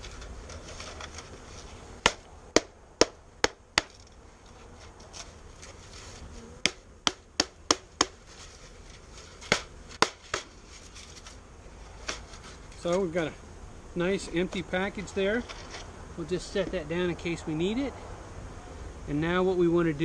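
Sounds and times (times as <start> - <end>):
sharp knocks on bee package: 2.0 - 4.0, 6.6 - 8.2, 9.4 - 10.5.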